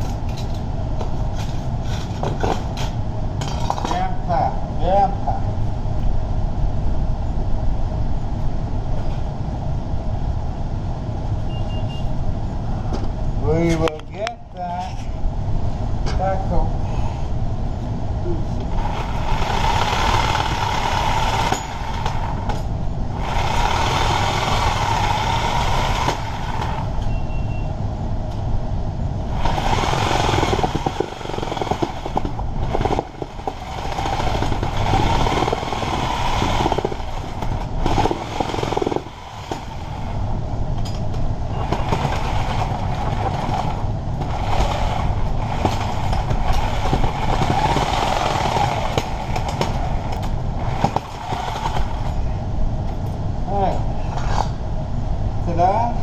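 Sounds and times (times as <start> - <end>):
backhoe diesel engine running: 18.6 - 27.7, 29.3 - 40.8, 41.4 - 53.1.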